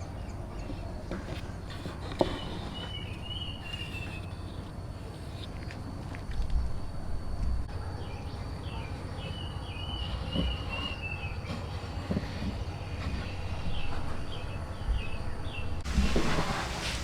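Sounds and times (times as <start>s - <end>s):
insect drone: 0.0s - 16.8s
bird chirping: 2.2s - 4.6s, 7.8s - 11.8s.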